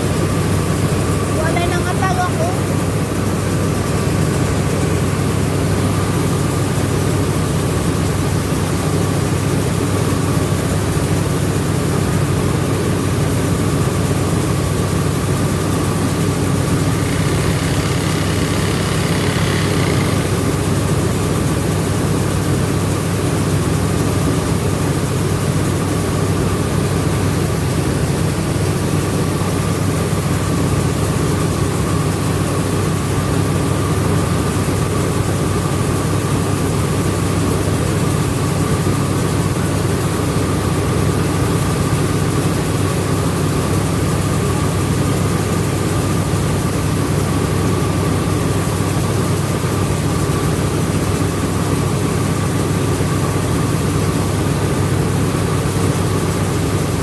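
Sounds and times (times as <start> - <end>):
milling machine drone: 15.0 - 21.7.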